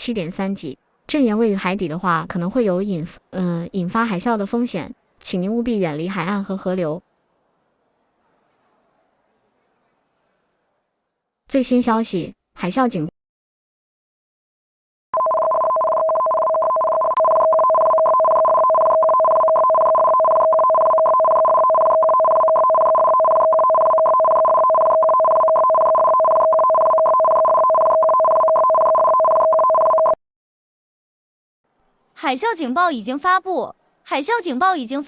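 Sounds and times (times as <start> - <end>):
electronic two-tone warning signal: 15.2 - 30.2.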